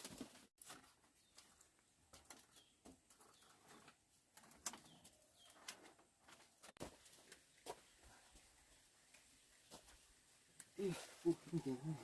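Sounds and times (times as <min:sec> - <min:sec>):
bird chirping: 0:01.2 - 0:03.9, 0:04.7 - 0:05.9.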